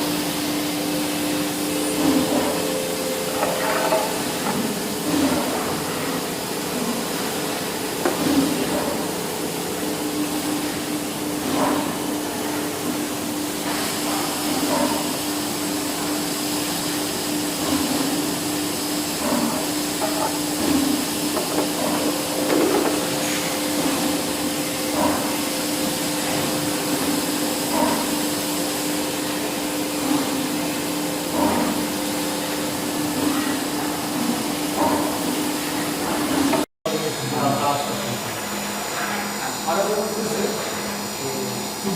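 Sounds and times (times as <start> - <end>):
machine hum with hiss: 0.0 - 41.9.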